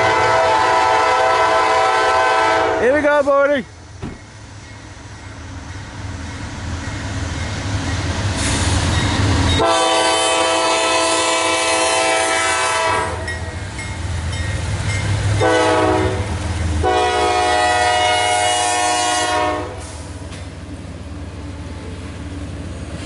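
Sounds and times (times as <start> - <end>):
locomotive air horn: 0.0 - 2.9, 9.6 - 13.3, 15.4 - 20.1
train low rumble: 0.0 - 23.0.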